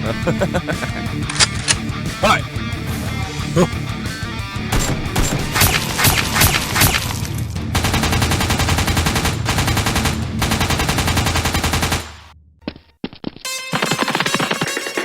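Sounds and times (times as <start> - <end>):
gunshots: 4.7 - 7.2
rapid machine-gun bursts: 7.8 - 12.2.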